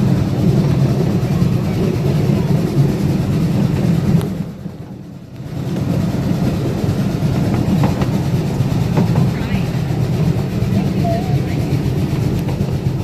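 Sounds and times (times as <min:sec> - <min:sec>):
train wheels clacking over rails: 0:00.0 - 0:13.0.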